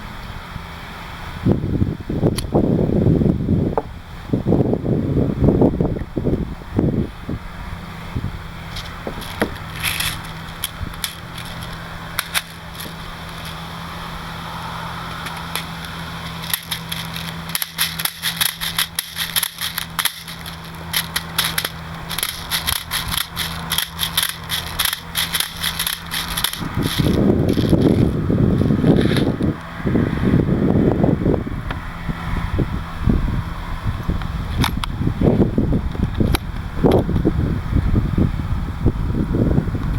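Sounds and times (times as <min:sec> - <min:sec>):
low hum: 0:00.0 - 0:39.7
rapid strings of sharp cracks: 0:08.7 - 0:13.6, 0:15.2 - 0:29.4.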